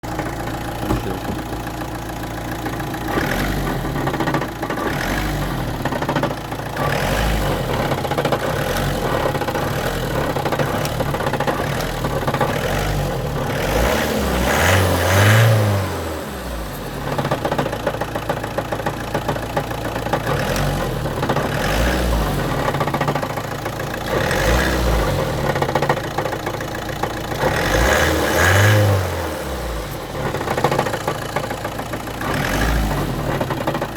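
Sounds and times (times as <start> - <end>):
car engine idling and revving: 0.0 - 33.9.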